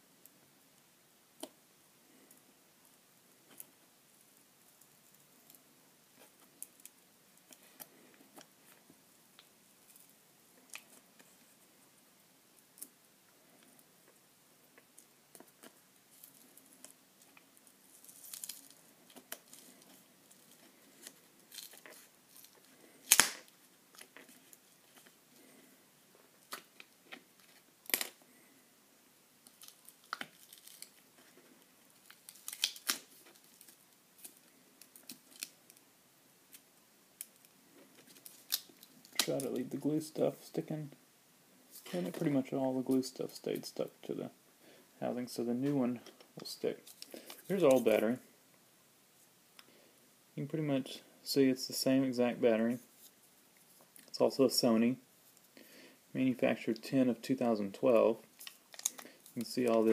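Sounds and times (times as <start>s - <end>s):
adhesive tearing: 18.0s - 25.1s, 29.4s - 31.3s, 32.0s - 35.8s, 58.4s - 59.9s
sharp snap: 23.1s - 23.4s.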